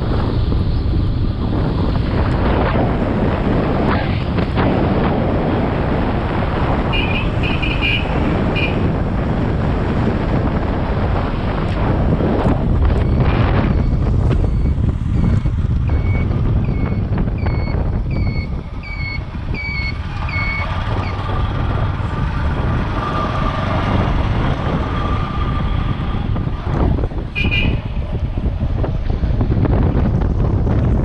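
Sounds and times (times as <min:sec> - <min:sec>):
vehicle road noise: 0:00.0 - 0:31.0
wind rushing over microphone: 0:00.0 - 0:31.0.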